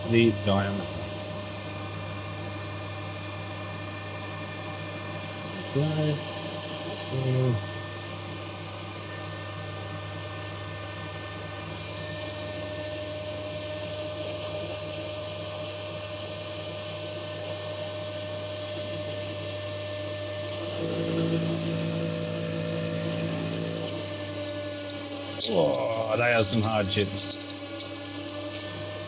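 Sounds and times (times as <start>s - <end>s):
hiss: 18.6s - 22.9s
high tool cutting tone: 18.6s - 28.9s
metal lathe humming: 18.6s - 29.0s.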